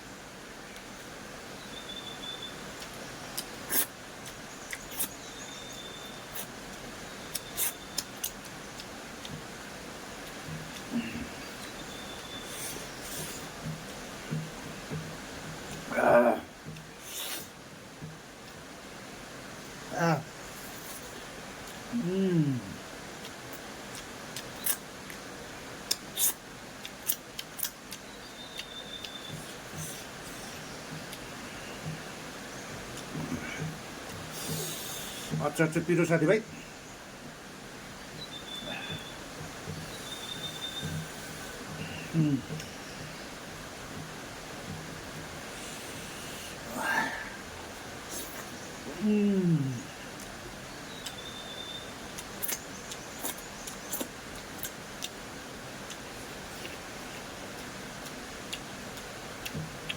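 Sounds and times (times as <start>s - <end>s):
steady background hiss: 0.0s - 59.9s
mouth smacks and clicks: 2.8s - 5.2s, 6.3s - 9.4s, 23.2s - 31.2s, 52.2s - 55.2s, 55.8s - 59.9s
person chewing a meal: 6.3s - 9.4s, 23.2s - 32.1s, 52.2s - 59.9s.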